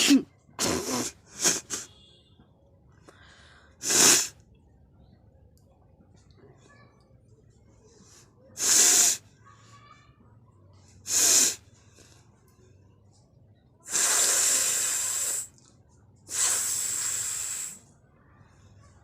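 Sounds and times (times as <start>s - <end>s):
person blowing through nose: 0.0s - 2.0s, 3.8s - 4.4s, 8.6s - 9.2s, 11.1s - 11.6s, 13.9s - 15.5s, 16.3s - 17.8s.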